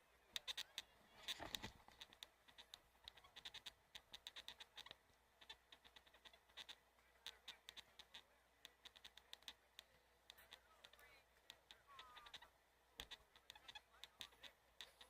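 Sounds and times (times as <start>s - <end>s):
faint clicks and ticks: 0.0s - 15.0s.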